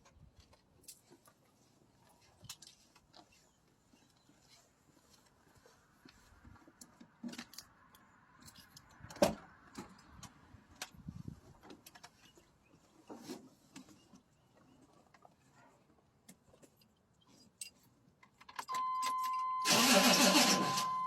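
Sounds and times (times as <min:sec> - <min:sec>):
car keys jangling: 0:18.5 - 0:21.0.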